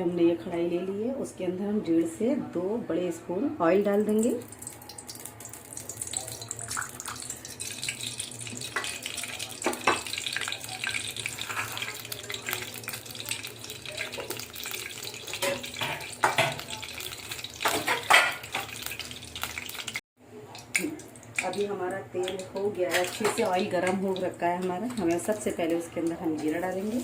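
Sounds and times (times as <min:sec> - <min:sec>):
hot oil hissing and crackling: 0:04.5 - 0:20.0.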